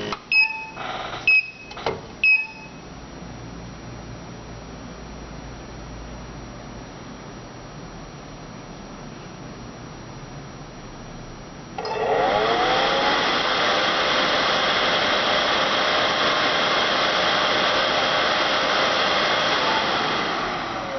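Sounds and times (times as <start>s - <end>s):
electric blower whine and rush: 11.8s - 20.9s.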